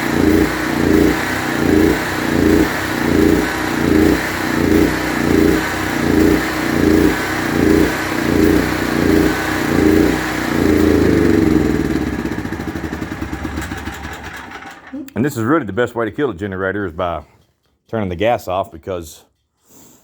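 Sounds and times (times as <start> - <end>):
generator engine running: 0.0 - 15.1.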